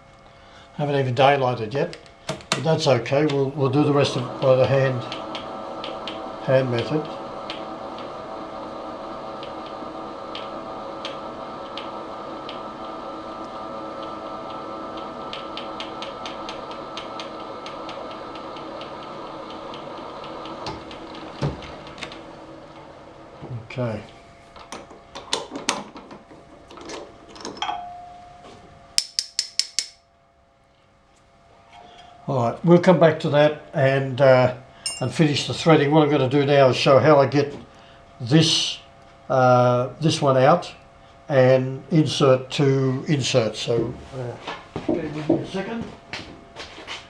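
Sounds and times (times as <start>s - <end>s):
machine hum: 1.0s - 27.6s.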